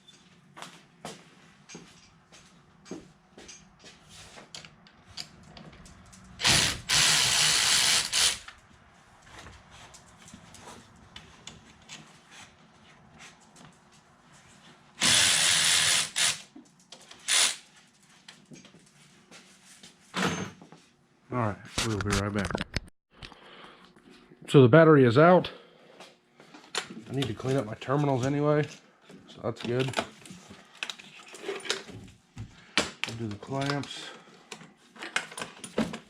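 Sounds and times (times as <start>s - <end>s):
power tool bursts: 6.4s - 8.6s, 15.0s - 16.5s, 17.2s - 17.6s.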